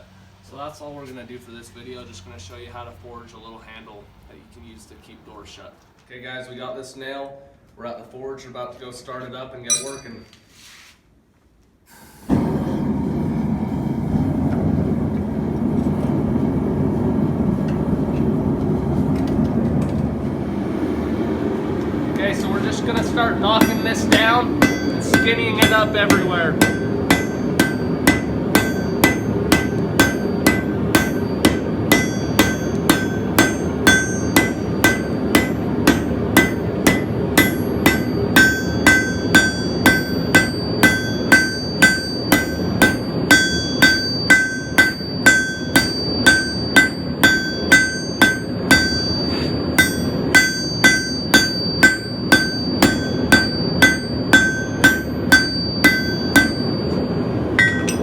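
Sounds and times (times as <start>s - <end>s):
hammer ringing on anvil: 9.7s - 10.4s, 22.3s - 58.0s.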